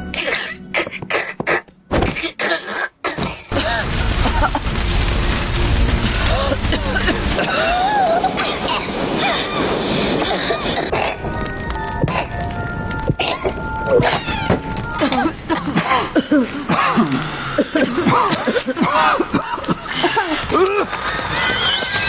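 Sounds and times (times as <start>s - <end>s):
cartoon characters coughing: 0.1s - 3.5s.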